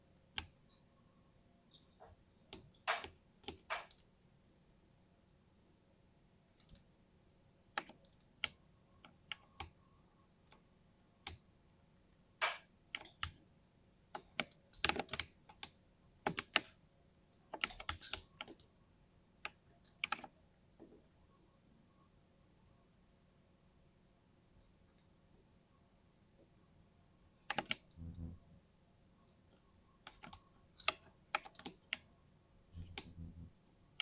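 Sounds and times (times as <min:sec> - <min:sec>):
mechanical keyboard typing: 0:14.2 - 0:16.8, 0:17.5 - 0:18.7, 0:19.9 - 0:20.3, 0:27.5 - 0:28.4, 0:30.0 - 0:32.1, 0:32.8 - 0:33.5.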